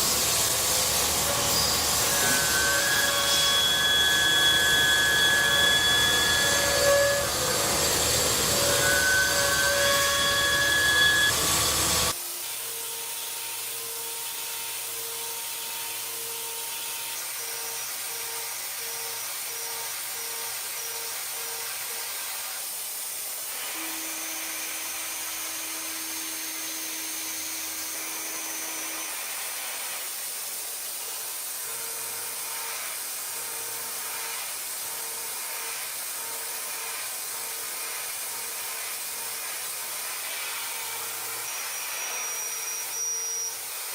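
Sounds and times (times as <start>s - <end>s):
cnc machine cutting hiss: 0.0s - 43.9s
machine tones: 1.0s - 12.1s.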